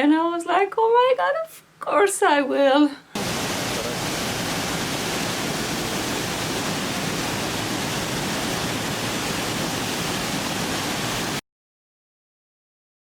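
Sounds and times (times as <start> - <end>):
waterfall rushing water: 3.2 - 11.4.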